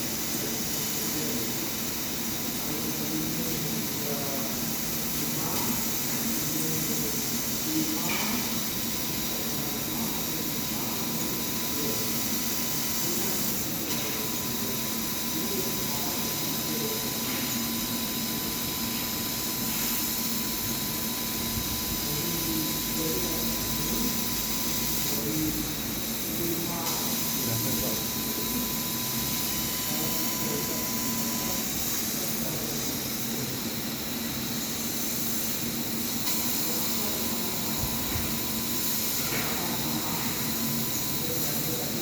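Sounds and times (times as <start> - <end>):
steady hiss of fans and air: 0.0 - 42.0
thin steady whine: 0.0 - 42.0.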